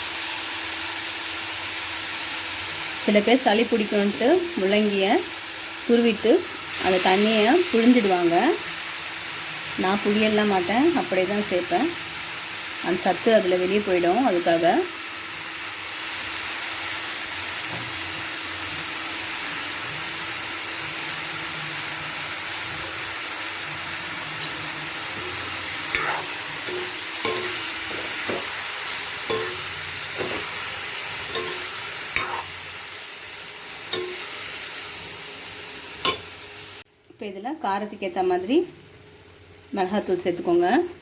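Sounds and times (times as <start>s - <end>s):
vegetables sizzling in oil: 0.0s - 41.0s.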